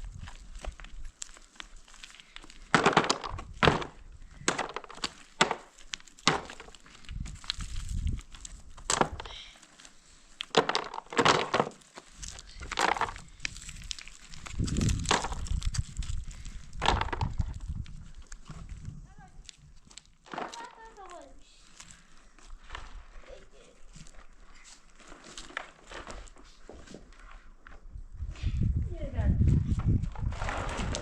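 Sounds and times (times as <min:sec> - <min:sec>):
knocks thuds and cracks: 0:02.6 - 0:07.6, 0:08.8 - 0:09.3, 0:10.4 - 0:11.8, 0:12.6 - 0:16.1, 0:16.7 - 0:17.6.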